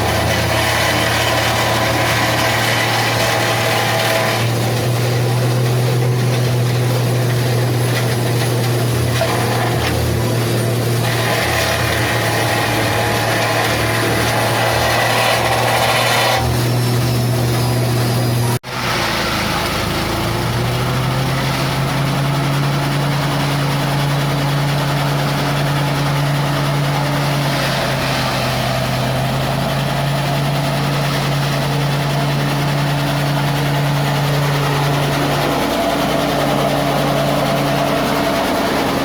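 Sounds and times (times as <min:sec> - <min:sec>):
forage chopper engine running: 0:00.0 - 0:39.0.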